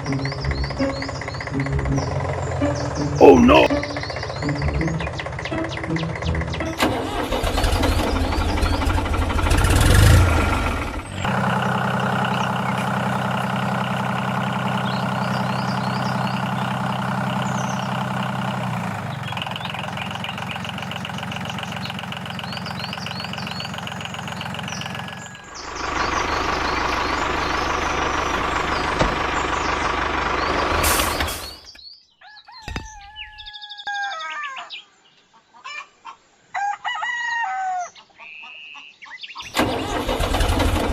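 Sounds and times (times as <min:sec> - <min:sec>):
birds chirping: 0:00.0 - 0:36.5, 0:37.8 - 0:40.8
small engine running: 0:03.8 - 0:31.2, 0:39.5 - 0:40.9.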